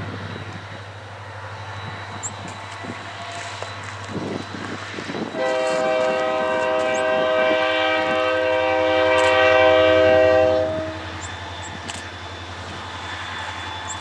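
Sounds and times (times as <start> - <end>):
diesel engine droning: 0.0 - 14.0
locomotive air horn blast: 5.3 - 11.7.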